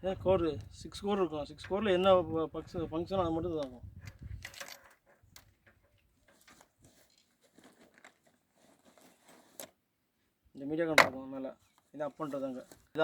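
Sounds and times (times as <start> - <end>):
small clicks and crinkles: 3.6 - 9.8.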